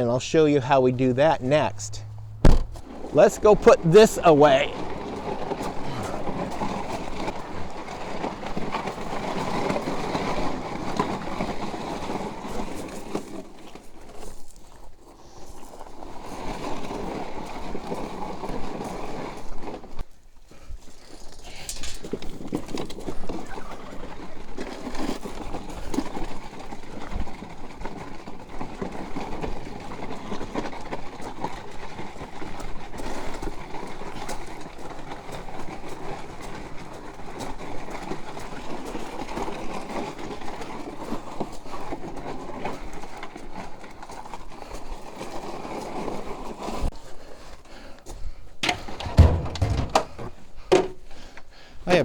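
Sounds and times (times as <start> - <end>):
cart wheels rattling on rough ground: 0.0 - 52.0
plastic jugs knocking: 2.2 - 3.0, 48.6 - 51.1.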